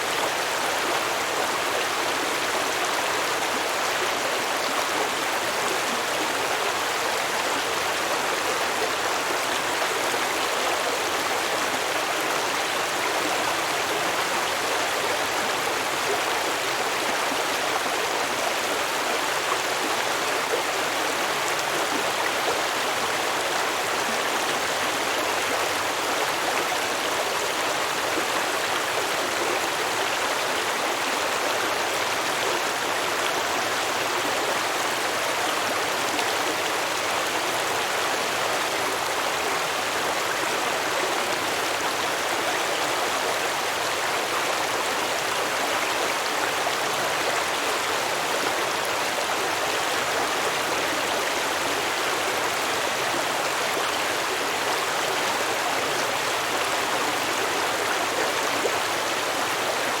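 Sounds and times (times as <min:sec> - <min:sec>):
stream babbling over rocks: 0:00.0 - 1:00.0.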